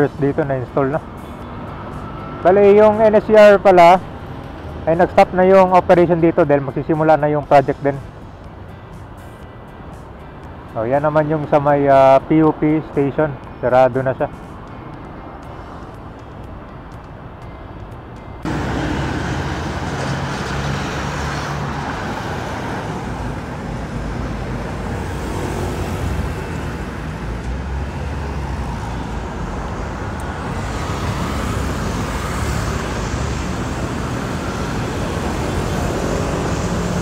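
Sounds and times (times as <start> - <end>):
road traffic: 0.0 - 37.0
low engine hum: 18.4 - 37.0.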